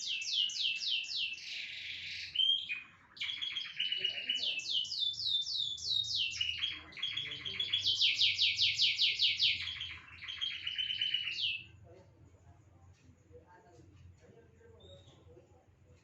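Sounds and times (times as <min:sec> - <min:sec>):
canary singing trills: 0:00.0 - 0:11.8.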